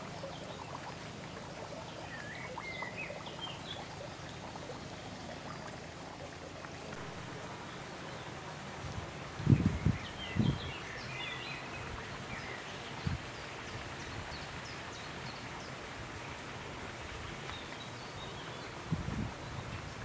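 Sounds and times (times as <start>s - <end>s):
small birds chirping: 0.0s - 5.9s
outdoor background hiss: 0.0s - 20.0s.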